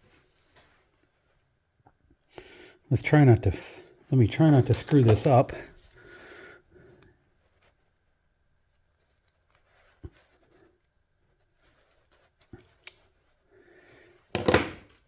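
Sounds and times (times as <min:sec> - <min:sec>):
rustling of wire: 0:04.2 - 0:06.1.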